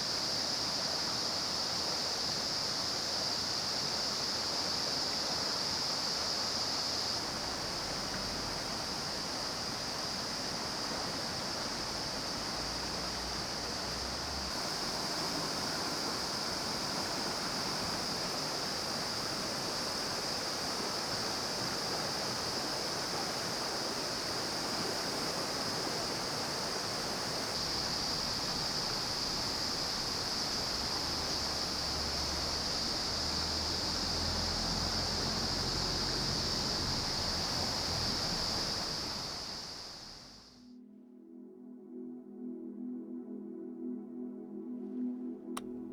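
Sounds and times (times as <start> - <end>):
stream rushing over rocks: 5.1 - 40.2.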